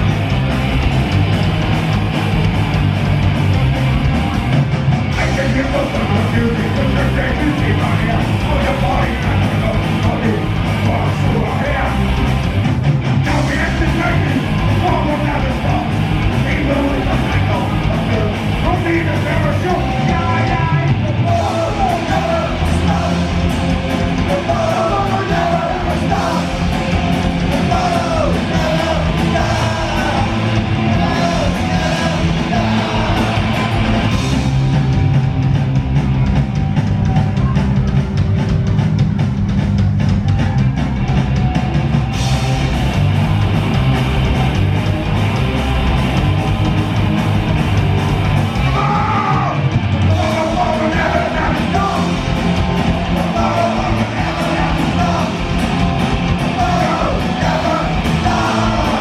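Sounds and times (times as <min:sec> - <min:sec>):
punk rock band playing: 0:00.0 - 0:59.0
person yelling vocals: 0:48.6 - 0:52.1.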